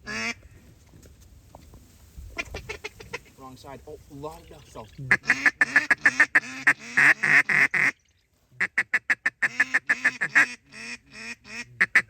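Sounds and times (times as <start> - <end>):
duck call quacking: 0.0 - 0.4, 5.1 - 8.0, 8.6 - 12.0.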